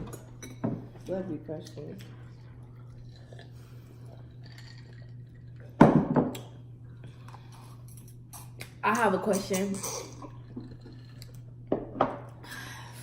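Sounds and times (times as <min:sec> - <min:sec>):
dishes and glass clinking: 0:00.0 - 0:01.0
steady low hum: 0:00.0 - 0:13.0.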